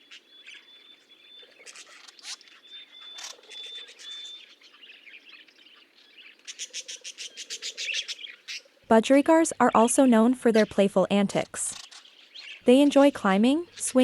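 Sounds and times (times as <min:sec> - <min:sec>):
budgerigars chirping and warbling: 0:00.0 - 0:08.8, 0:10.5 - 0:14.0.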